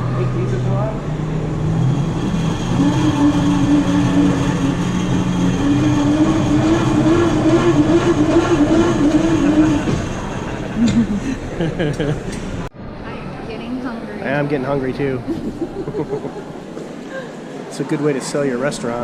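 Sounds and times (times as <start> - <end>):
crank generator whirring whine: 0.0 - 12.7.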